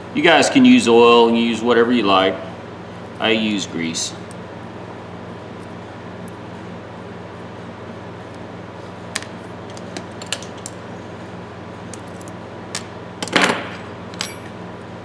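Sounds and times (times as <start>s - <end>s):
steady low hum: 0.0s - 15.0s
metal tools clicking on workbench: 11.9s - 14.6s.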